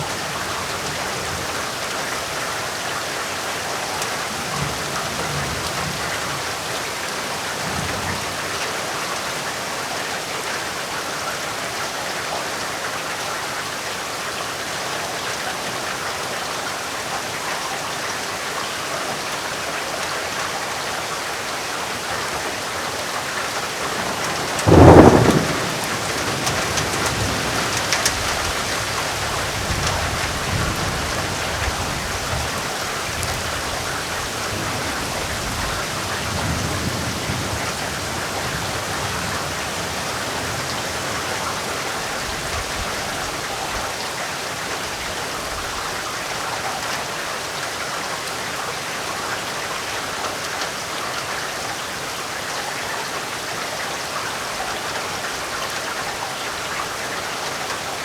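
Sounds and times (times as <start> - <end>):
heavy rain: 0.0 - 58.0
low thunder rumbling: 23.8 - 43.2
sharp thunderclap: 24.0 - 31.0.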